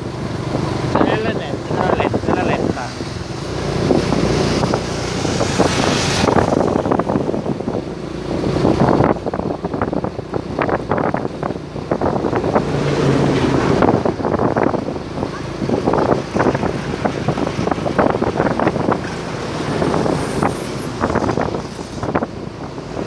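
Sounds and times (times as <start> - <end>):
road traffic rumble: 0.0 - 23.0
brief high hiss: 19.4 - 21.0.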